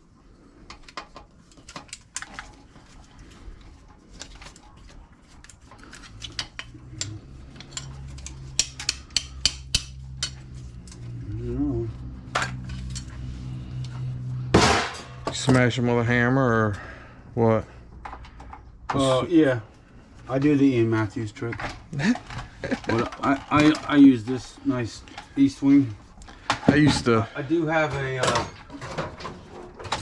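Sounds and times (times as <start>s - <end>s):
metal scrap parts clinking: 14.6s - 15.4s.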